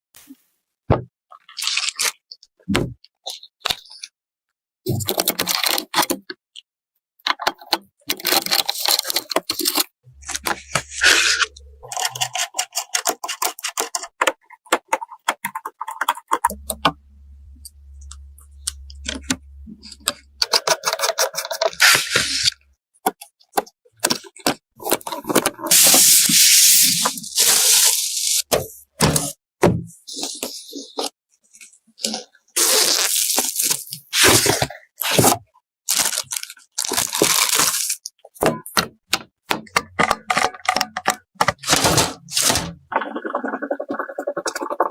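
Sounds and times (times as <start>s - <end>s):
low hum: 10.1s - 11.9s, 16.5s - 20.5s.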